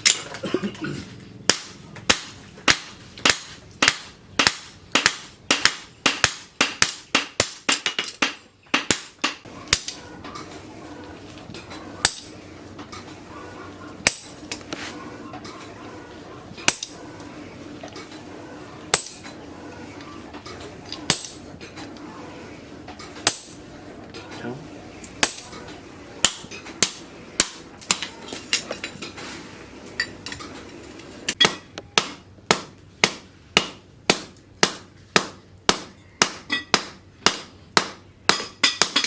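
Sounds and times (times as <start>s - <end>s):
hammer striking steel on anvil: 1.5s - 10.0s, 16.7s - 17.1s, 18.9s - 19.3s, 23.2s - 23.6s, 25.2s - 28.6s, 31.4s - 39.0s.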